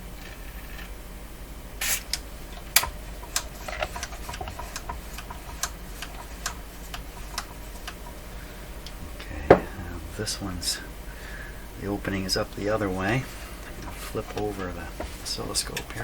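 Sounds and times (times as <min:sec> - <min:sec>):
short hissing bursts: 0:01.8 - 0:02.2
low hum: 0:05.2 - 0:15.0.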